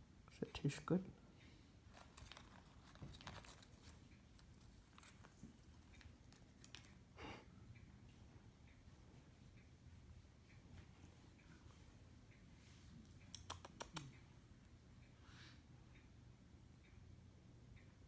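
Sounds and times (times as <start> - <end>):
cat chewing tape crinkling: 1.8 - 7.0.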